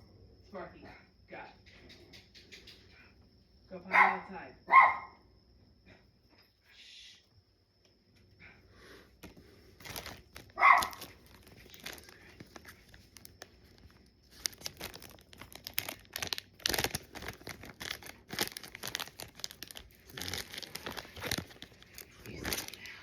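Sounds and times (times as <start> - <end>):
dog bark: 3.9 - 5.2, 10.6 - 11.0
foil wrapper crinkling and tearing: 9.2 - 23.0.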